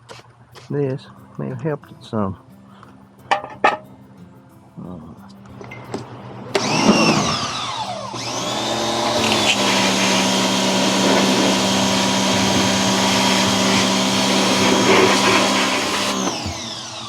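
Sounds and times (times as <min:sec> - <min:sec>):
pressure washer motor hum: 0:06.6 - 0:17.0
hiss of water spray: 0:09.1 - 0:16.5.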